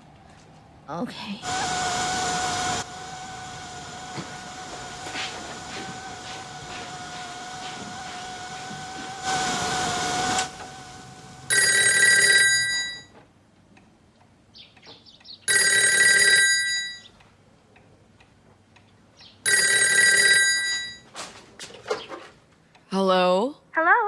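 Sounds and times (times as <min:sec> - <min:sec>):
telephone ringing: 0:11.5 - 0:13.1, 0:15.5 - 0:17.1, 0:19.5 - 0:21.1.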